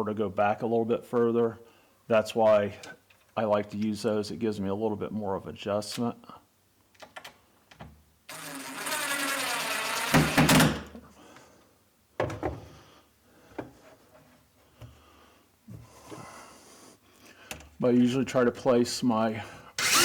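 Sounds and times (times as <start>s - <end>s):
cordless drill driving screw: 8.3s - 10.8s, 19.8s - 20.0s.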